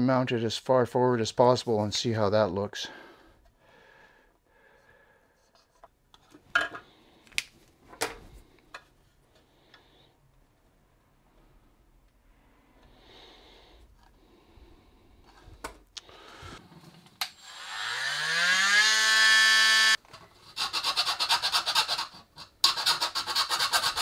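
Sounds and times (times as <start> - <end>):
power tool motor whining: 17.3 - 20.0
rapid rasping cutting plastic: 18.8 - 24.0.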